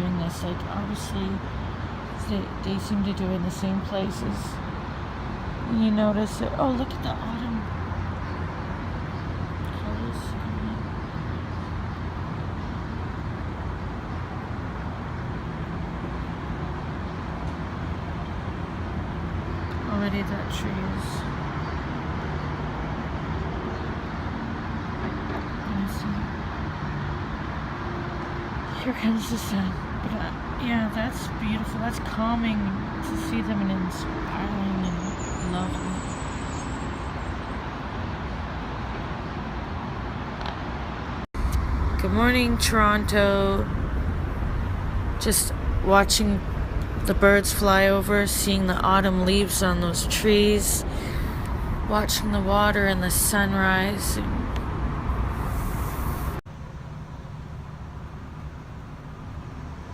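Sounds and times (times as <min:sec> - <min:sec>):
city traffic rumble: 0:00.0 - 0:59.9
passing cars: 0:00.0 - 0:59.9
low rumble: 0:41.4 - 0:56.4.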